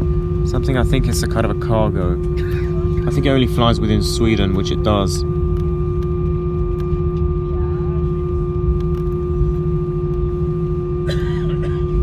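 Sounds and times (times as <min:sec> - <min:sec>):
airplane cabin engine drone: 0:00.0 - 0:12.0.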